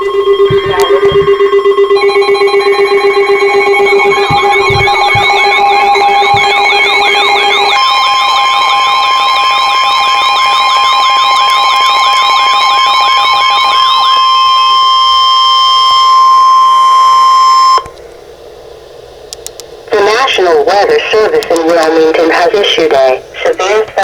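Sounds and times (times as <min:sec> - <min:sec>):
steady alert tone: 0:00.0 - 0:09.4
warbling alarm tone: 0:00.0 - 0:17.9
clicks: 0:19.3 - 0:19.7.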